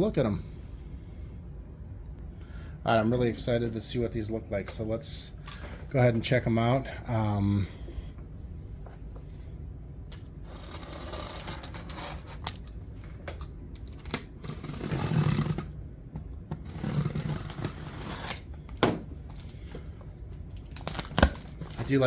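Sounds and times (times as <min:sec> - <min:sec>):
cardboard box scraping and tearing: 0:10.5 - 0:12.5, 0:14.2 - 0:15.7, 0:16.6 - 0:18.5.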